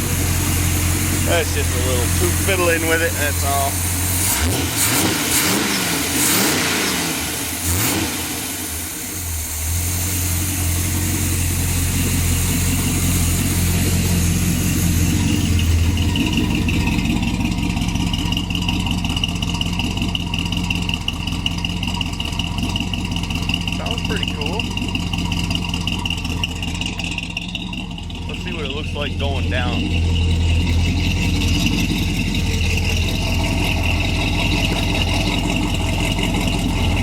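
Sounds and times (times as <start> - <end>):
steady high whine: 0.0 - 4.2, 8.4 - 37.0
truck engine revving and idling: 0.0 - 37.0
person talking: 23.8 - 24.7, 28.3 - 29.9.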